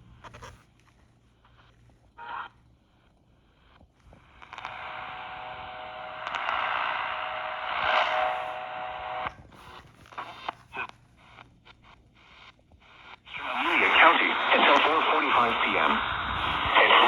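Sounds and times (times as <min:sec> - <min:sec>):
radio static hiss: 0:03.4 - 0:11.4, 0:12.4 - 0:17.0.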